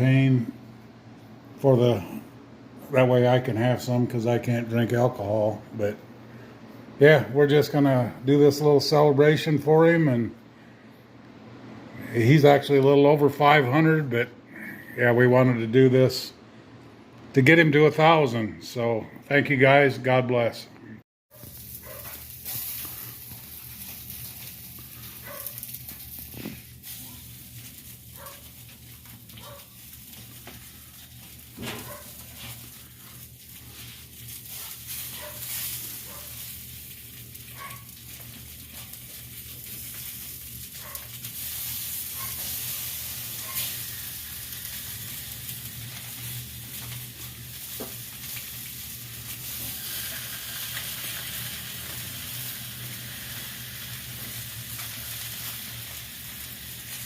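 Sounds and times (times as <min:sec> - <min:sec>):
sausages sizzling: 0:21.3 - 0:57.0.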